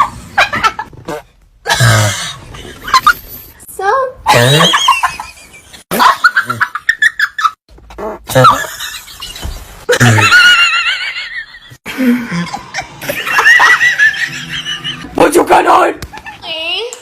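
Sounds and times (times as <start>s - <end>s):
fart: 7.9s - 8.4s.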